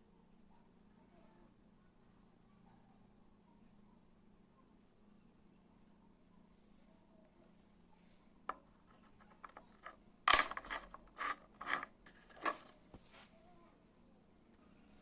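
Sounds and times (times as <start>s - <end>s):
metal tools clicking: 9.3s - 12.7s
metal on metal rattling: 9.3s - 12.8s.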